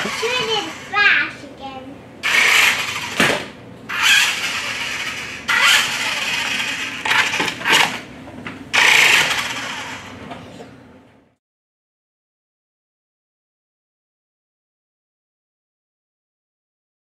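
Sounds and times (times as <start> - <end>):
small electric motor whirring: 0.0 - 1.0, 2.2 - 8.0, 8.7 - 10.2.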